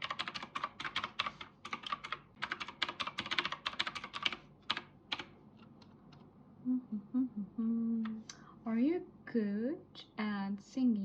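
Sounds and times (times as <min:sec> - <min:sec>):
typing on computer keyboard: 0:00.0 - 0:05.3.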